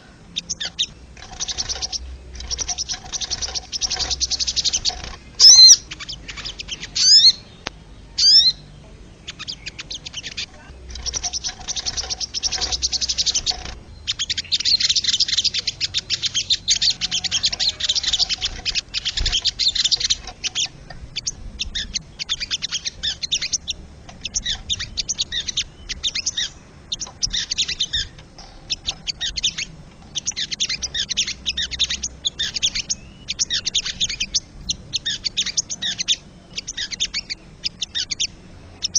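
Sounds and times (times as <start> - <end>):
bird rattling chatter: 0.4 - 7.3, 9.3 - 36.1
bird rising whistles: 2.5 - 5.8.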